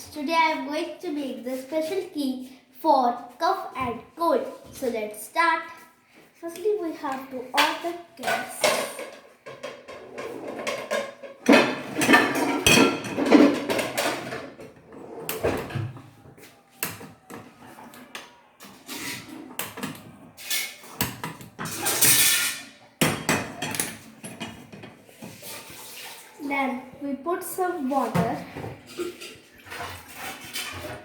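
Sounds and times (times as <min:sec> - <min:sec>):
metal pan and utensils clattering: 0:07.6 - 0:15.9, 0:18.0 - 0:26.4, 0:28.0 - 0:31.0.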